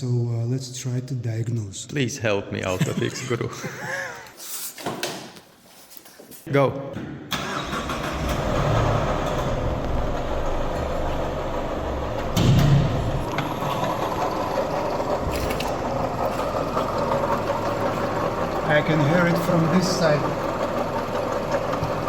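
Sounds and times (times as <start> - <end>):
car engine running: 8.0 - 22.0.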